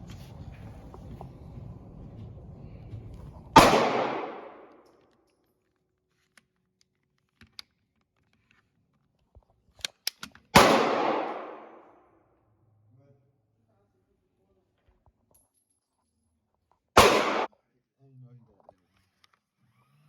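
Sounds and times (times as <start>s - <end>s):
pistol shots with echo: 3.6s - 4.8s, 10.6s - 12.0s, 17.0s - 17.5s
small clicks: 9.2s - 10.5s.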